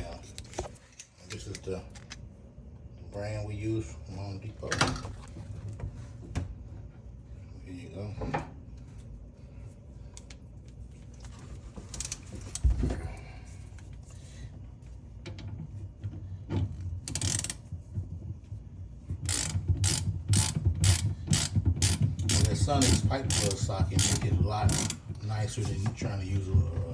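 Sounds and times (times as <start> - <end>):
ratchet wrench clicking: 17.1 - 17.6, 19.3 - 25.0.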